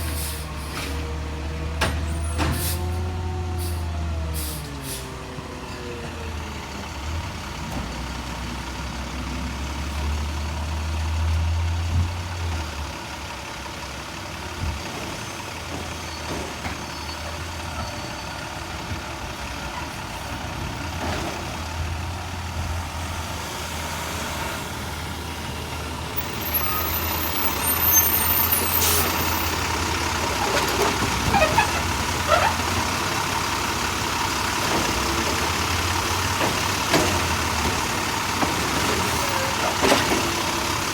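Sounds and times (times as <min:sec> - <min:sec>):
garbage truck diesel engine: 0:00.0 - 0:40.9
knocks and squeals of machinery: 0:15.1 - 0:18.5, 0:30.2 - 0:32.9.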